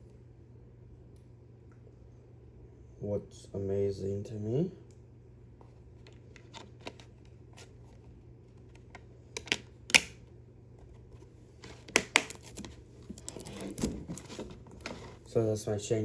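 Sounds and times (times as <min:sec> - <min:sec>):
plastic case clicking and snapping: 0:08.8 - 0:10.2, 0:11.7 - 0:12.7.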